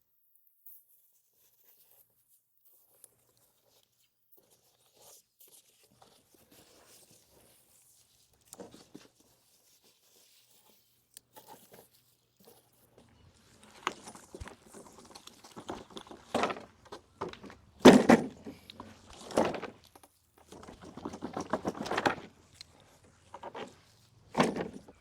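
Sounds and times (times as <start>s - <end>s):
thuds and rustles of handling: 11.4s - 25.0s.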